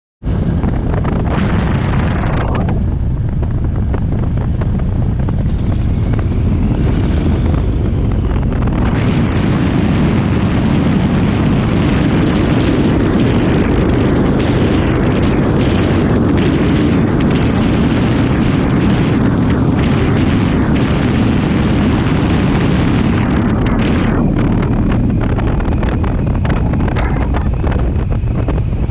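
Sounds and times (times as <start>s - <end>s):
light airplane engine rumble: 19.8s - 28.9s.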